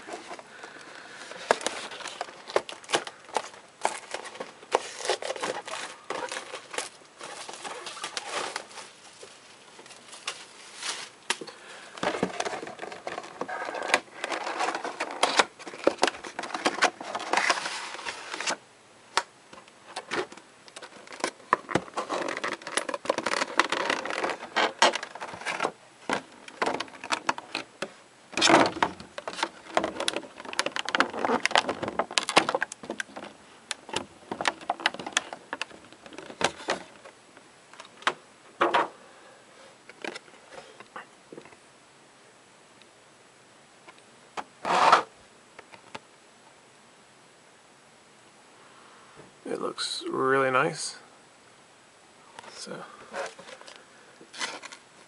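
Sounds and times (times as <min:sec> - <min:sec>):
cardboard and plastic packaging crinkling: 0:00.0 - 0:18.6, 0:19.2 - 0:37.2, 0:52.5 - 0:54.9.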